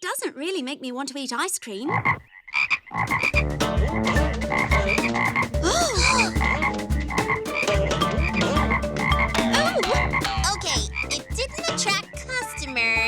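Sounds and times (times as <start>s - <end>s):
low rhythmic thumps: 3.0s - 13.0s.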